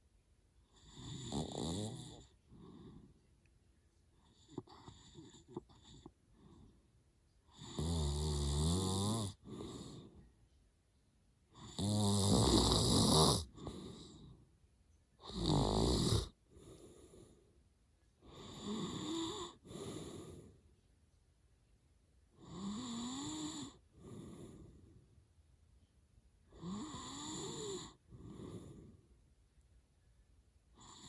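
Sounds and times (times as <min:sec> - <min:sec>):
man snoring: 0:00.8 - 0:02.3, 0:07.6 - 0:10.0, 0:11.6 - 0:13.9, 0:15.2 - 0:16.4, 0:18.3 - 0:20.4, 0:22.4 - 0:24.3, 0:26.6 - 0:28.8
quiet breath: 0:01.9 - 0:07.8, 0:09.2 - 0:11.8, 0:13.4 - 0:15.4, 0:16.0 - 0:31.0.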